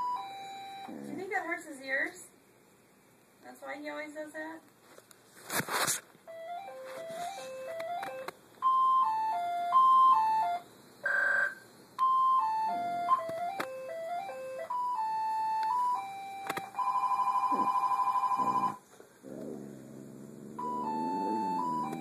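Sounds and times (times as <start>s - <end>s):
phone ringtone beeping melody: 0.0s - 0.9s, 6.3s - 18.8s, 20.6s - 22.0s
pulsing alarm tone: 16.8s - 18.8s, 20.6s - 22.0s
dog howling: 20.5s - 22.0s.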